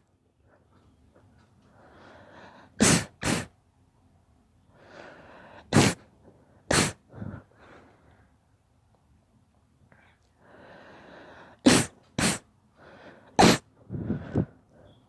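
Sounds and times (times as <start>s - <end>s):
girl sneezing: 2.8s - 3.5s, 5.7s - 6.0s, 6.7s - 7.0s, 11.6s - 12.4s, 13.4s - 13.7s
drawn-in breath: 4.7s - 5.9s, 10.4s - 11.6s.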